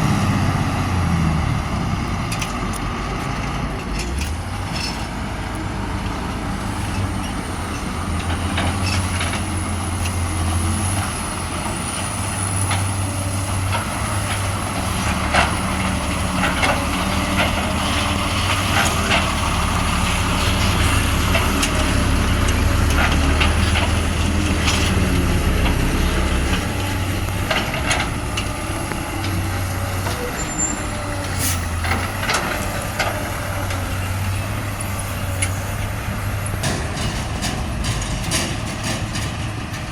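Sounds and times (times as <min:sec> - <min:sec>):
diesel truck engines rumbling: 0:00.0 - 0:39.9.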